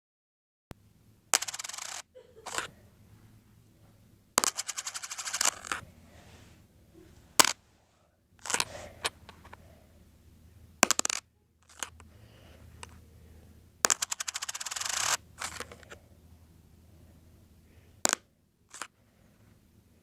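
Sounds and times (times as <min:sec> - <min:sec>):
coin clattering on hard surface: 0:01.4 - 0:02.7, 0:04.4 - 0:05.8, 0:10.8 - 0:11.9, 0:13.8 - 0:15.9, 0:18.1 - 0:18.9.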